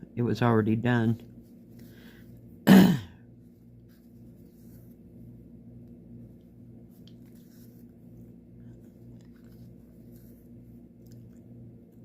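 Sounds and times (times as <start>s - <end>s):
low steady hum: 0.0s - 12.0s
needle and floss through fabric: 3.5s - 12.0s.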